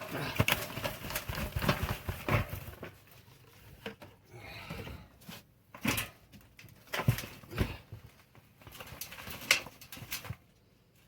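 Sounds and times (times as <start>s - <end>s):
rustling of carrot tops: 0.0s - 4.0s.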